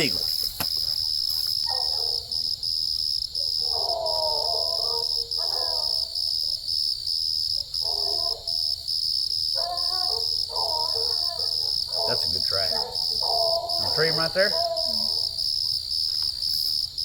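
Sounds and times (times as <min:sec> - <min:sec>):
crickets chirping: 0:00.0 - 0:17.0
distant hound bawling: 0:03.5 - 0:06.1, 0:09.6 - 0:15.4.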